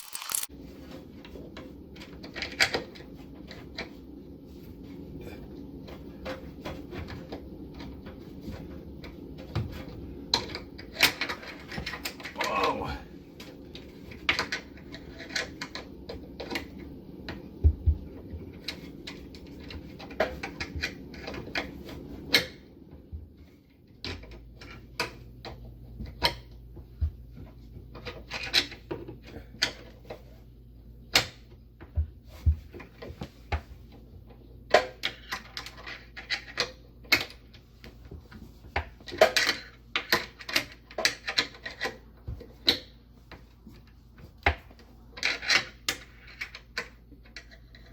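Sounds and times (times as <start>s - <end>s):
screwdriver clicking and scraping: 0.0s - 0.5s.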